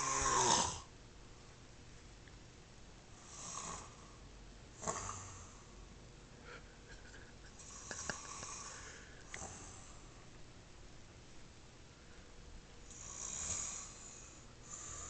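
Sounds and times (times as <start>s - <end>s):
soft breathy snores: 0.0s - 0.9s, 3.1s - 5.8s, 7.5s - 10.2s, 12.8s - 15.0s.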